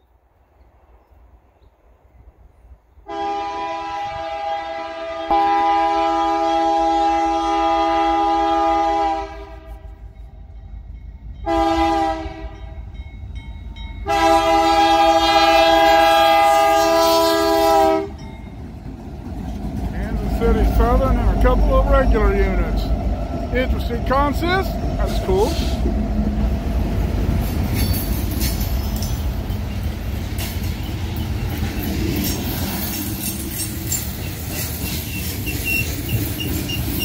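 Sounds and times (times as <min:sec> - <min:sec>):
low train rumble: 0:00.0 - 0:37.0
train air horn blasts: 0:03.0 - 0:10.2, 0:11.4 - 0:12.8, 0:14.0 - 0:18.2.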